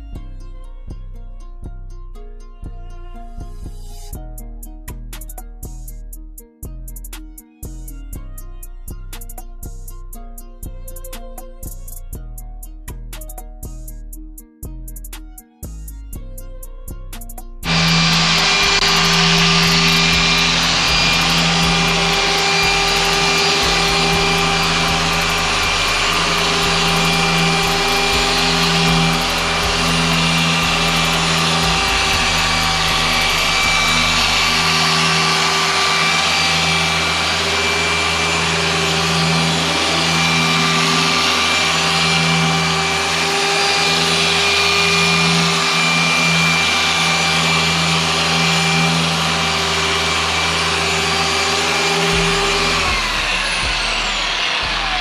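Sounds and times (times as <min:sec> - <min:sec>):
electric tool whining: 0:17.6 - 0:55.0.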